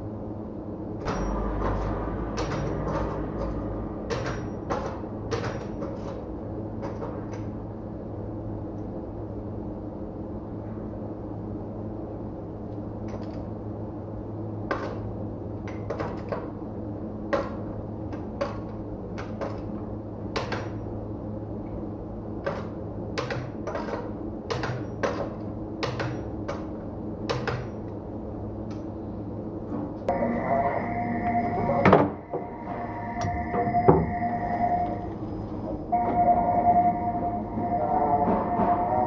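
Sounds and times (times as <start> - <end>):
steady machine hum: 0.0 - 15.7, 27.9 - 39.0.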